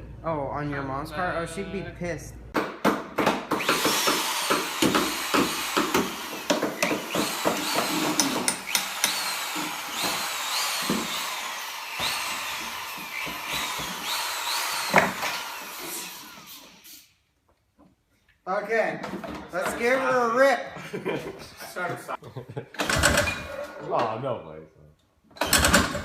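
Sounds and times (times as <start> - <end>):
power tool motor whining: 3.6 - 17.1.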